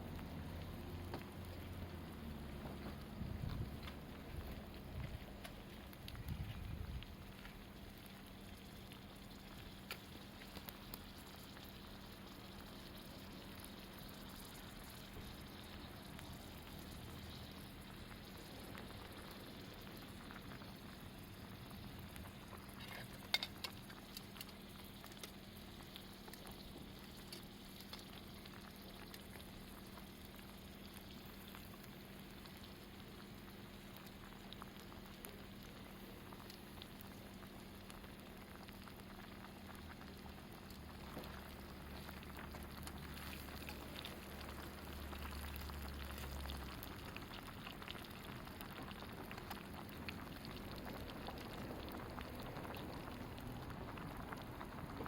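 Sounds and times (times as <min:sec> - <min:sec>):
campfire crack: 0:00.0 - 0:55.0
food bubbling and sizzling: 0:00.0 - 0:55.0.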